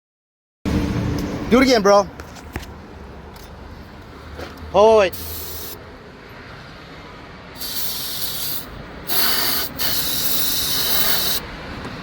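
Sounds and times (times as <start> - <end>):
aerosol can spraying: 5.2 - 5.8, 7.6 - 11.4.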